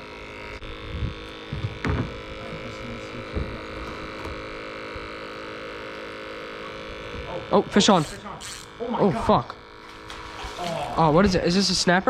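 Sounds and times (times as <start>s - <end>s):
steady hum of even tones: 0.0s - 12.0s
dull thumps: 1.5s - 2.3s.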